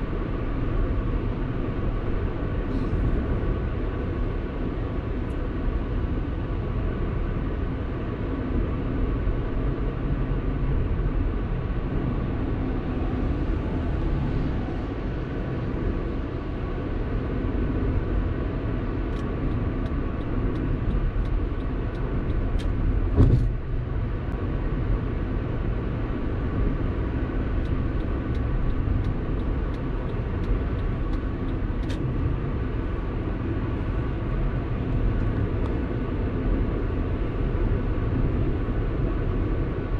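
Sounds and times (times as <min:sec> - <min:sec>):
car road and engine rumble: 0:00.0 - 0:39.9
thump from road bump: 0:23.1 - 0:23.6.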